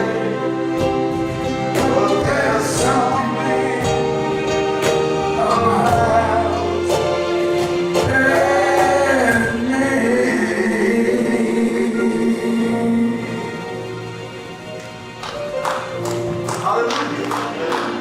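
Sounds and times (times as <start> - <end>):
voices singing gospel song: 0.0 - 14.1.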